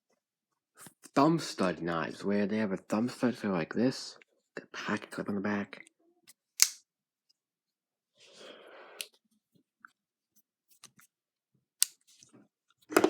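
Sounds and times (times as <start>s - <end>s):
folding knife clicks: 6.6s - 6.8s.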